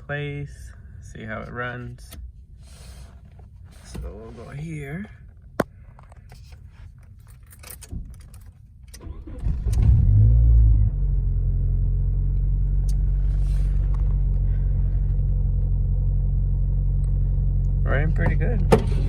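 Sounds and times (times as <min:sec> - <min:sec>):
car engine starting and idling: 0:07.2 - 0:19.0.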